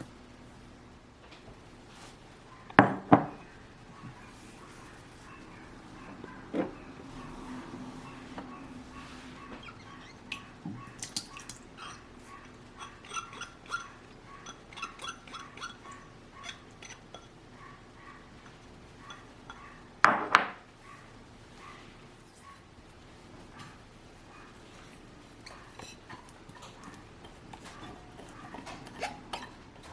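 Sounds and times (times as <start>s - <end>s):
utensil clinking against dish: 25.4s - 29.9s.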